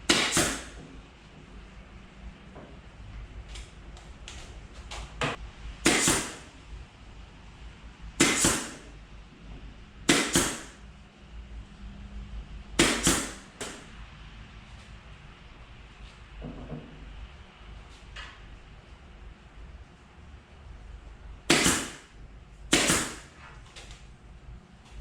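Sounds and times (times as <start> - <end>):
pin nailer shots: 0.0 - 0.8, 5.8 - 6.6, 8.2 - 8.9, 10.1 - 10.8, 12.8 - 13.9, 21.4 - 23.4
tool clicking against wood: 21.5 - 22.0.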